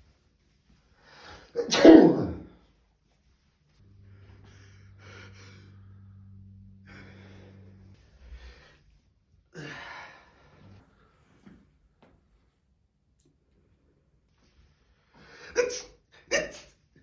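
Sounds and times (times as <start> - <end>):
person sneezing: 1.6 - 2.5, 15.3 - 16.8
person gasping breaths: 9.6 - 10.8.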